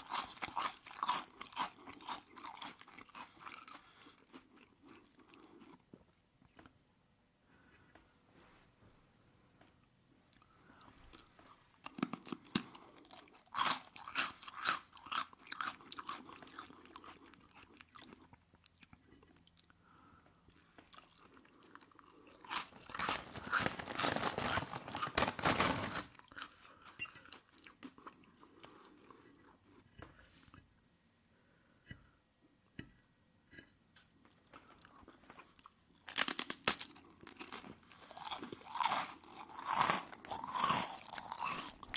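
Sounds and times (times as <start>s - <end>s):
wet chewing sounds: 37.0s - 41.9s.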